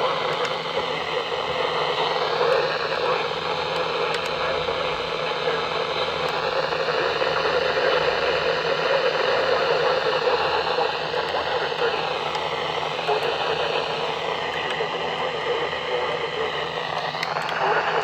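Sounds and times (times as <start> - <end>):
radio static hiss: 13.1 - 18.0.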